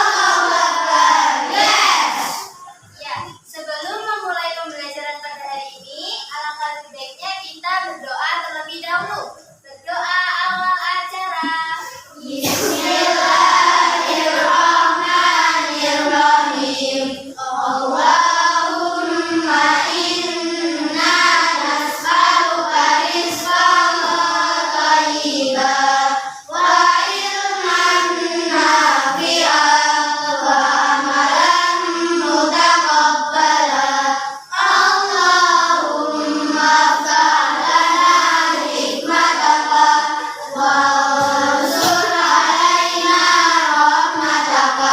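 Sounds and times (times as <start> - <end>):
children singing in unison: 0.0 - 3.5, 9.0 - 44.9.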